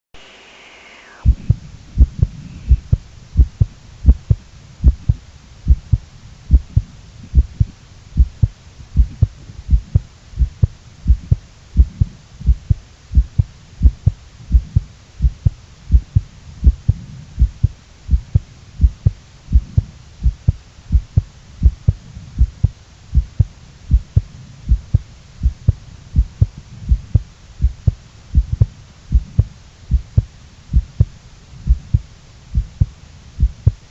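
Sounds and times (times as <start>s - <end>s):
heartbeat double thumps: 1.2s - 33.9s.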